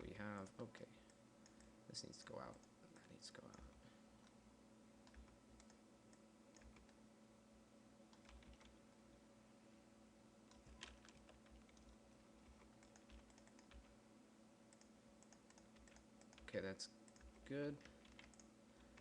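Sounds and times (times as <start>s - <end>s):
low electrical hum: 0.0s - 19.0s
keyboard and mouse clicks: 5.0s - 7.0s, 8.1s - 8.8s, 10.5s - 13.9s, 14.7s - 16.5s, 17.1s - 19.0s.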